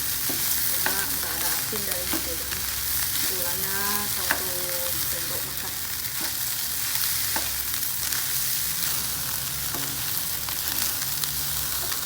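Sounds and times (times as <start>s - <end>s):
rice sizzling in a hot pan: 0.0s - 12.0s
spatula scraping and tapping: 0.2s - 2.5s, 6.1s - 8.2s, 9.7s - 10.9s.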